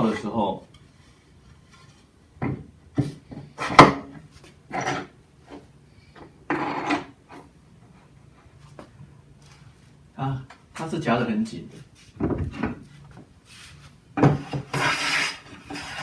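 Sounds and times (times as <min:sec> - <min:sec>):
short scraping sounds: 0:13.5 - 0:16.0.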